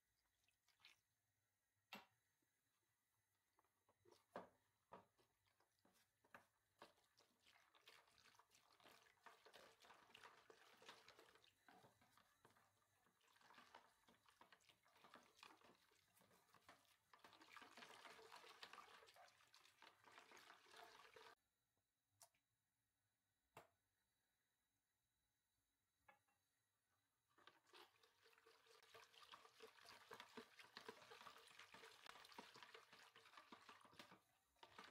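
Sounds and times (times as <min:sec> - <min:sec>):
faint liquid pouring and sloshing: 0:00.0 - 0:01.4, 0:03.6 - 0:21.4, 0:27.0 - 0:34.9.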